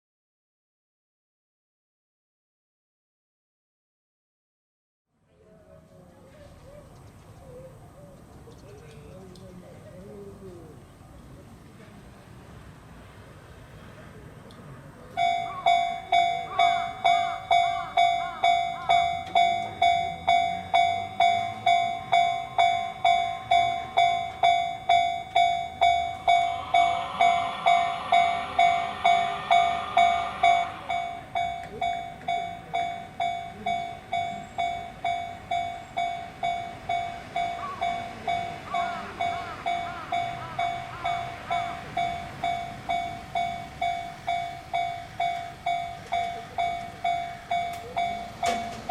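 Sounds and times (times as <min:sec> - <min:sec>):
level crossing warning bell: 0:15.1 - 0:48.9
rushing noise: 0:18.9 - 0:33.2.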